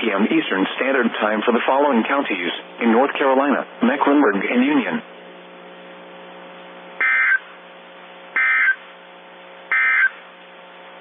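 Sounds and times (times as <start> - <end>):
steady low buzz: 0.0 - 11.0.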